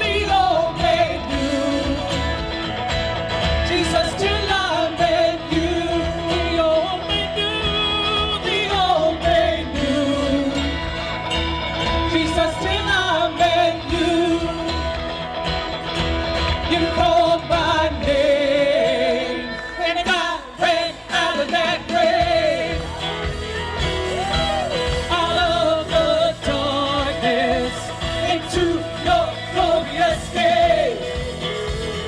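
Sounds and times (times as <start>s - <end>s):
person singing: 0.0s - 2.6s, 3.6s - 11.2s, 11.8s - 15.3s, 16.5s - 31.8s
worship band playing: 0.0s - 32.0s.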